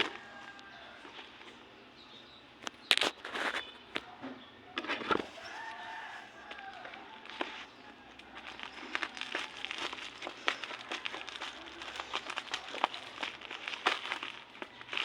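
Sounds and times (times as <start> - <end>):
packaging crinkling and crackling: 5.0 - 15.0.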